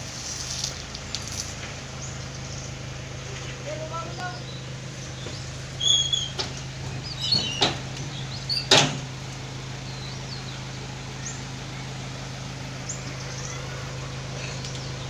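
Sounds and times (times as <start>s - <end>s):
steady low hum: 0.0s - 15.0s
birds chirping: 0.7s - 15.0s
sharp knocks: 6.3s - 9.1s.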